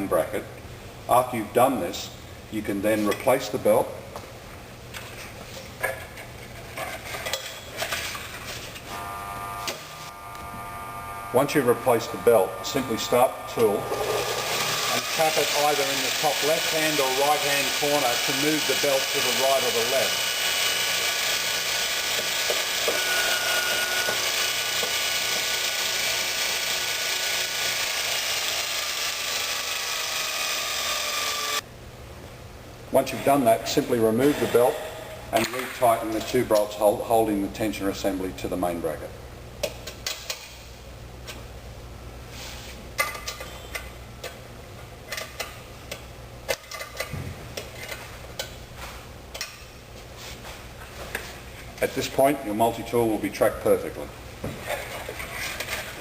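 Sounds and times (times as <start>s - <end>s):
steady low hum: 0.0s - 15.2s
belt grinder running: 8.9s - 31.6s.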